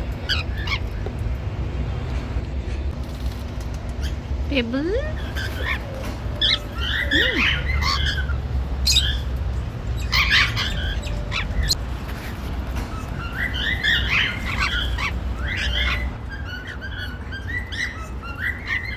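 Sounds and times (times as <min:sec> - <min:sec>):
steady low hum: 0:00.0 - 0:16.4
cockatiels chirping and whistling: 0:00.2 - 0:01.0, 0:05.2 - 0:18.9.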